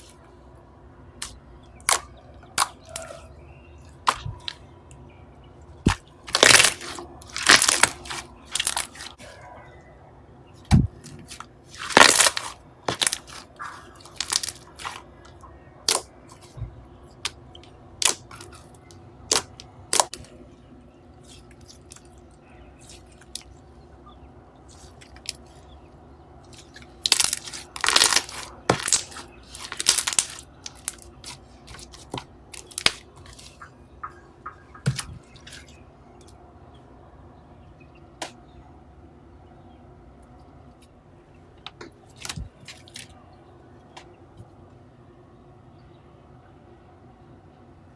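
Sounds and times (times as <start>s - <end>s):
slime squelching and popping: 5.9s - 9.2s, 10.6s - 16.6s, 18.0s - 20.3s, 26.5s - 35.8s.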